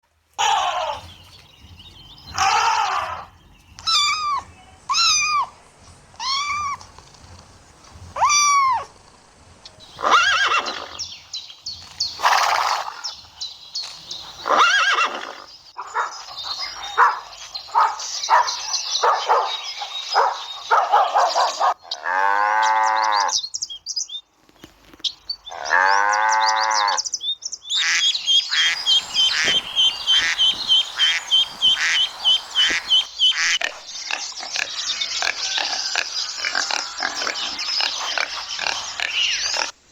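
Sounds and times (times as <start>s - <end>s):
birds chirping: 0.2s - 39.9s
short arched animal calls: 6.2s - 6.9s
rapid chirping: 27.1s - 39.8s
long rising and falling calls: 27.7s - 39.7s.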